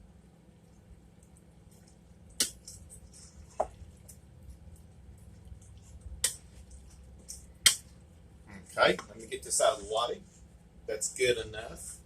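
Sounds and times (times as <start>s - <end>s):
wet squishing of stirred spaghetti: 0.6s - 8.4s.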